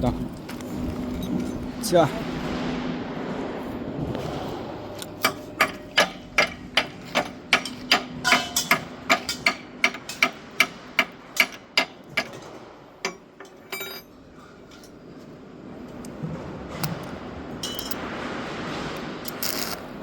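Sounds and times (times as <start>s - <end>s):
hammer striking steel: 5.1s - 14.9s.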